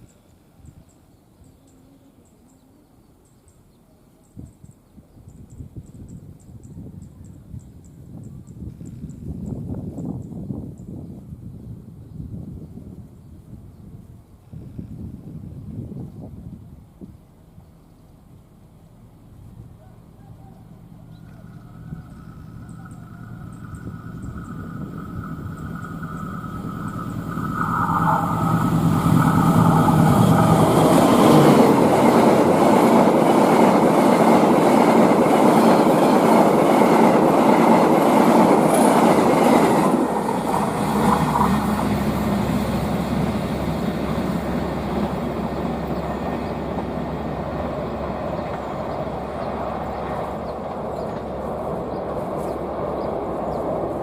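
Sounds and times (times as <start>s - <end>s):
train passing at high speed: 18.2s - 54.0s.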